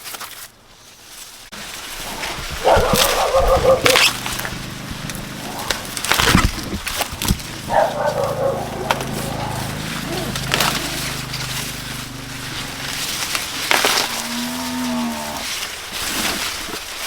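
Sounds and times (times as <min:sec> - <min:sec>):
corn stalks cracking and snapping: 0:00.0 - 0:00.5, 0:01.1 - 0:07.8, 0:08.7 - 0:17.0
rustling: 0:00.1 - 0:17.0
steady low hum: 0:02.6 - 0:15.5.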